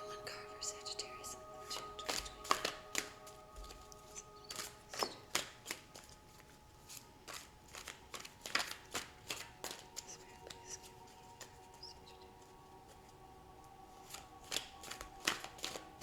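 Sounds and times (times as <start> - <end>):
faint background music: 0.0 - 16.0
cards being shuffled: 2.1 - 11.8, 14.0 - 16.0.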